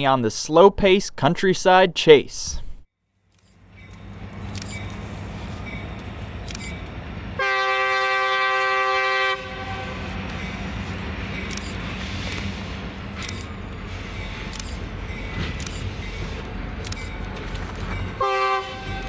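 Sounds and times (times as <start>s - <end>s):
locomotive engine rumble: 3.6s - 19.0s
locomotive air horn blast: 7.4s - 14.5s, 18.2s - 19.0s.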